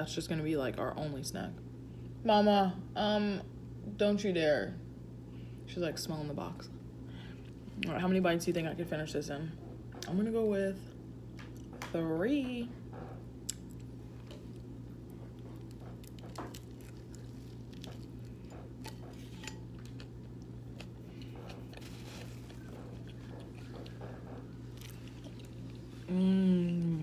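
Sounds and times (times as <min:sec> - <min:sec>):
steady low hum: 0:00.0 - 0:27.0
person chewing food: 0:13.4 - 0:27.0.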